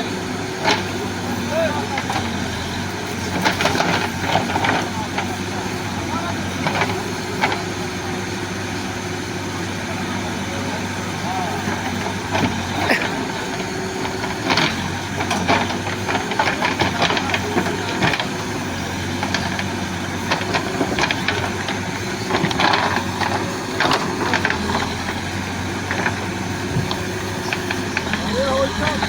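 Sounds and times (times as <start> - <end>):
diesel engine running: 0.0 - 29.0
knocks and crunching: 2.0 - 5.5, 11.6 - 29.0.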